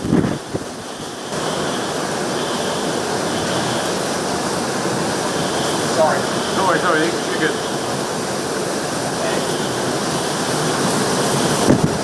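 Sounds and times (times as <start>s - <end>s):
heavy rain: 0.0s - 12.0s
hurricane wind: 0.0s - 12.0s
wind buffeting microphone: 0.0s - 12.0s.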